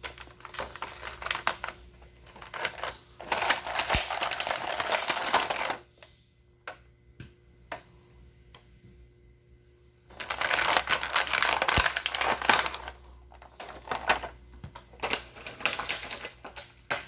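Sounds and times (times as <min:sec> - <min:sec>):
plastic parts clicking and clattering: 0:00.0 - 0:05.8, 0:10.1 - 0:17.0.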